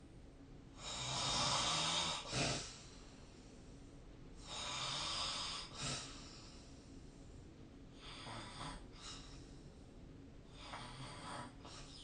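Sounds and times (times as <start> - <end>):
person snoring: 0.8 - 2.7, 8.0 - 8.9.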